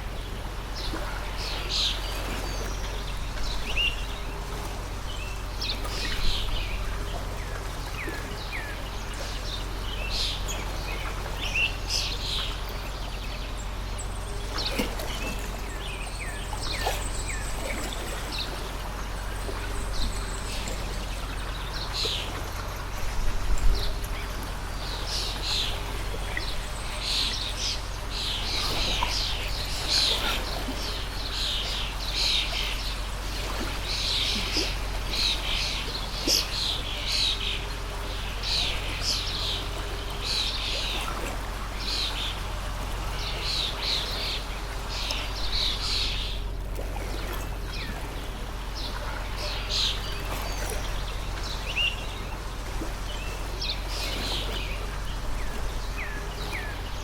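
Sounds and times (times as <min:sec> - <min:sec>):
small birds chirping: 0:00.0 - 0:46.6, 0:47.2 - 0:57.0
flowing stream: 0:00.0 - 0:57.0.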